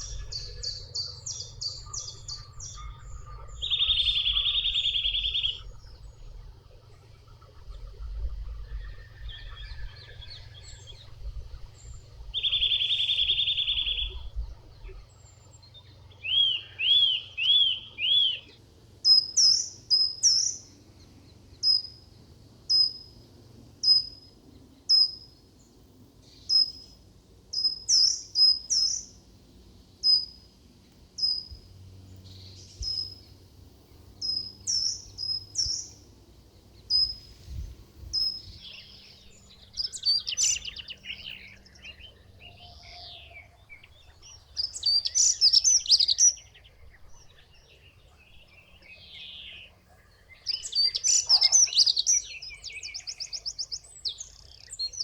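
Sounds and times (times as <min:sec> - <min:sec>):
high falling bird chirp: 0:00.0 - 0:20.7, 0:32.2 - 0:55.0
warbled bird song: 0:00.0 - 0:55.0.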